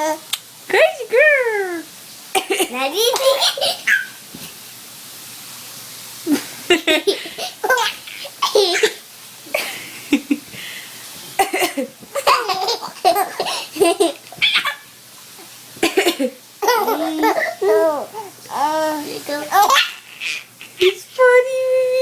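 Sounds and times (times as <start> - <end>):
baby laughing: 2.4 - 4.2, 6.3 - 9.8, 11.4 - 14.9, 15.8 - 18.7, 19.3 - 20.8
person coughing: 11.4 - 11.9.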